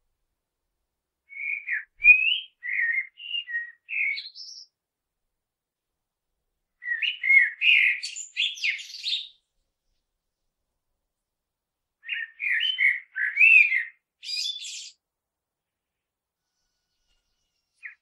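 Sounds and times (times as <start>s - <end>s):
blackbird singing: 1.3s - 4.8s, 6.8s - 9.4s, 12.0s - 15.0s, 17.8s - 18.0s.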